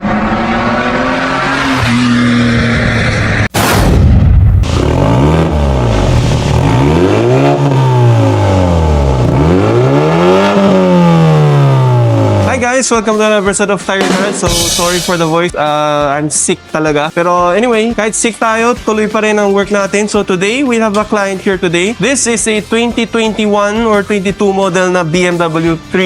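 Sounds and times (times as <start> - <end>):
car engine revving: 0.0 - 3.7, 4.6 - 12.7
loud exhaust rushing burst: 0.0 - 12.6.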